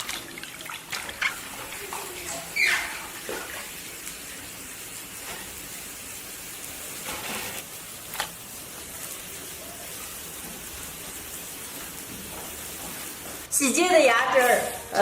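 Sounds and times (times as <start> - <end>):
water splashes: 0.0 - 3.8
tap water running: 0.0 - 13.5.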